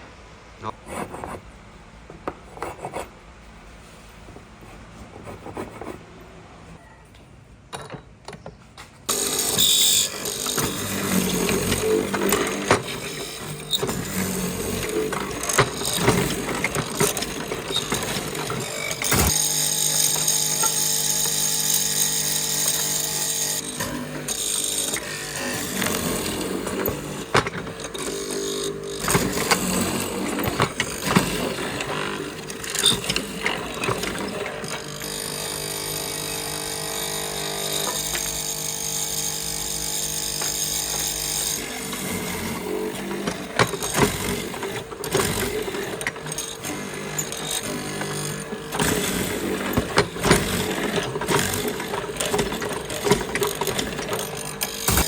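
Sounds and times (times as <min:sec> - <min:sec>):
tools and wood knocking: 0:07.1 - 0:35.0
power tool humming: 0:09.1 - 0:55.0.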